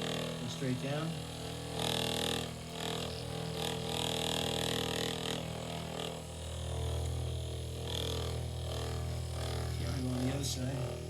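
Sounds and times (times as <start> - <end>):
massage gun buzzing: 0.0 - 11.0.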